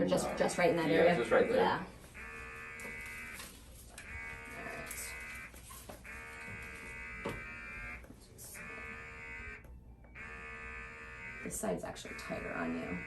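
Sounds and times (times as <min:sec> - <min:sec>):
suction pump buzzing: 0:02.2 - 0:03.4, 0:04.0 - 0:13.0.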